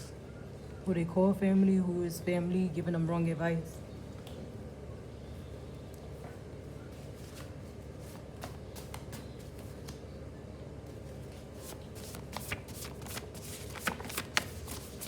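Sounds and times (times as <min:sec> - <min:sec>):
cards being shuffled: 0:11.3 - 0:15.0.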